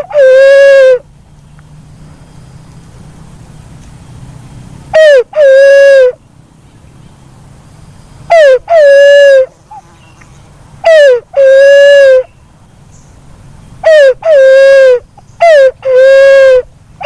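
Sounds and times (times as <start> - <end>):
dove two-note hoot: 0.0 - 1.1, 4.9 - 6.2, 8.3 - 9.6, 10.8 - 12.3, 13.8 - 16.7.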